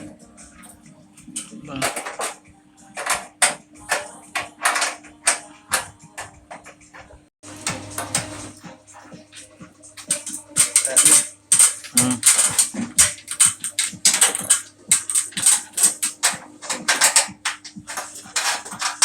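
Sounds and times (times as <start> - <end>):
ratcheting hand tool on metal: 10.1 - 19.0.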